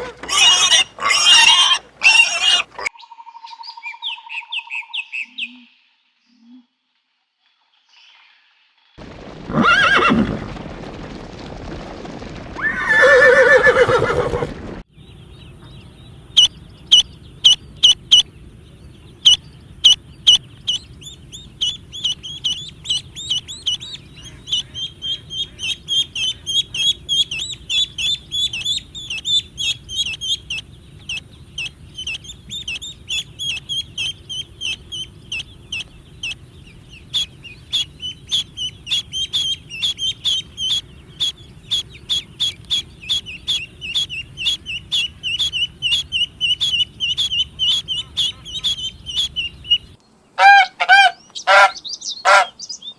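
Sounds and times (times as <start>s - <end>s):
loud animal calls: 0.0s - 2.9s, 9.0s - 11.0s, 12.0s - 14.8s, 16.4s - 52.6s
high-pitched chick chirps: 19.1s - 52.9s.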